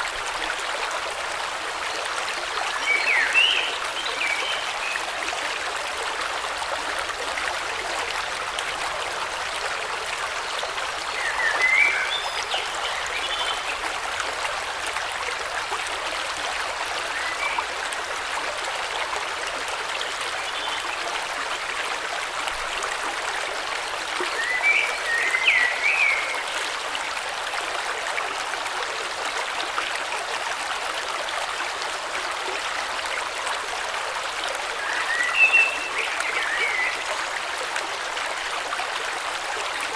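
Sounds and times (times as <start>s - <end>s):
river water rushing: 29.2s - 39.9s.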